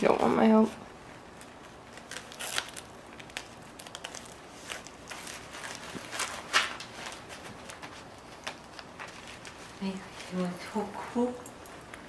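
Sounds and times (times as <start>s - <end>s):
suit fabric rustling: 0.0s - 11.9s.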